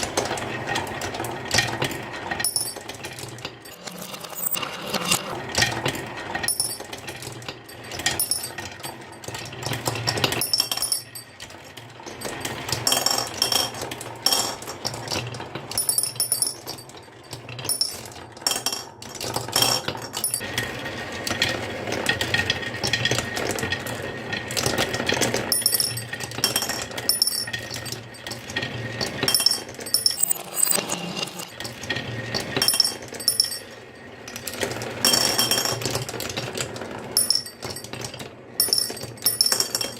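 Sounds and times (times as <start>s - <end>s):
marbles clattering down wooden run: 2.4s - 5.3s, 24.6s - 39.9s.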